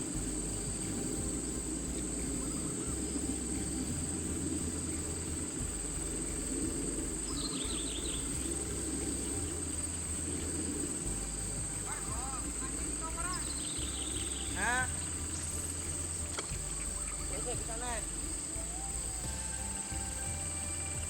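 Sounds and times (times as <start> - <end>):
faint chirps: 0.0 - 21.0
insects droning: 0.0 - 21.0
low rushing background noise: 0.0 - 21.0.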